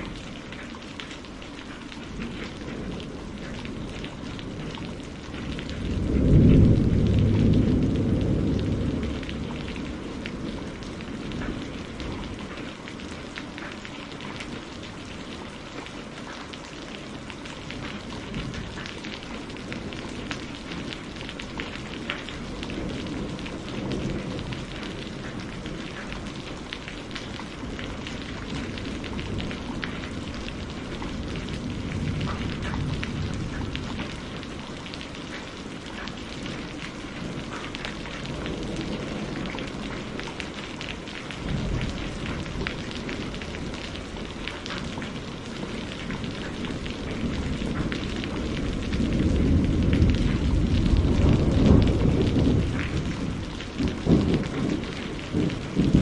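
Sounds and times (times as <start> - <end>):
raindrops ticking: 0.0 - 56.0
steady rain falling: 0.0 - 56.0
thunder rumbling: 2.0 - 13.3, 17.1 - 56.0.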